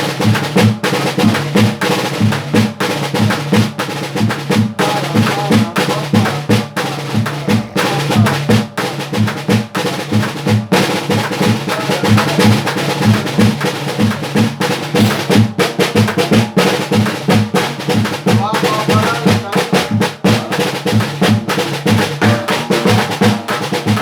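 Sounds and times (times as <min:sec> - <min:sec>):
snare drum rhythm: 0:00.0 - 0:24.0
can struck as bass drum: 0:19.8 - 0:24.0.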